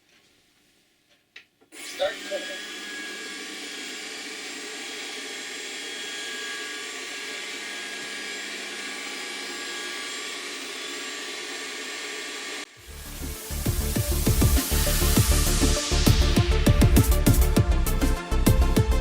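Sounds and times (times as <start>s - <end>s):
robot vacuum fan whirring: 1.8s - 17.2s
electronic music with heavy beat: 12.9s - 19.0s.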